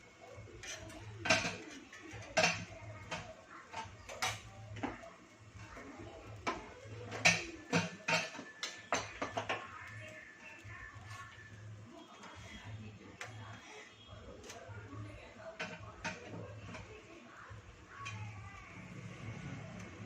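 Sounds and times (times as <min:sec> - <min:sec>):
metal utensils clinking: 0:00.4 - 0:10.0.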